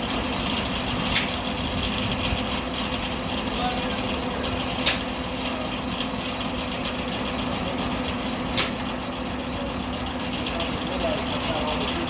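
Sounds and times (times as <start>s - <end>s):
sawmill running with steady hum: 0.0s - 12.0s
sharp click: 1.1s - 1.4s, 4.8s - 5.1s, 8.5s - 8.8s.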